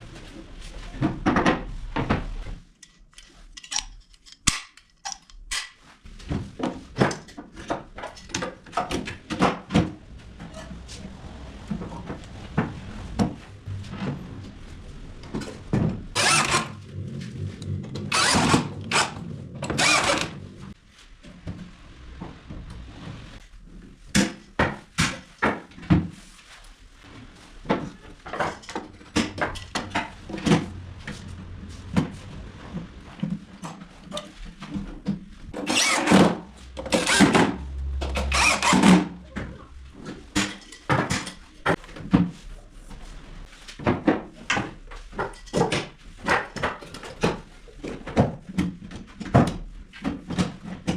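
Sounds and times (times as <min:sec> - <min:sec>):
power drill driving screws: 0:16.2 - 0:16.8, 0:18.1 - 0:20.4, 0:35.7 - 0:37.5, 0:38.2 - 0:39.0.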